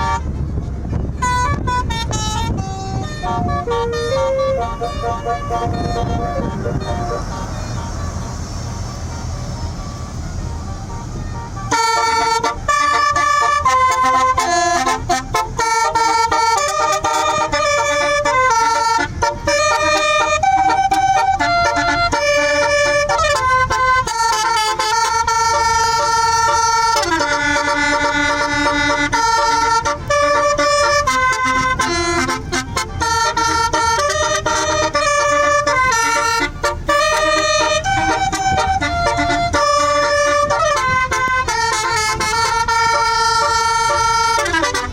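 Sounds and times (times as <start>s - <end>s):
musical air horn melody: 0.0s - 0.4s, 1.0s - 44.9s
low rumble: 0.0s - 11.7s.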